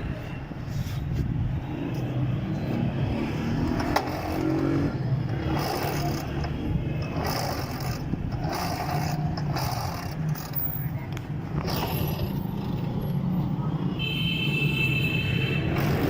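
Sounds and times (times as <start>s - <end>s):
scooter engine idling: 5.1s - 12.9s.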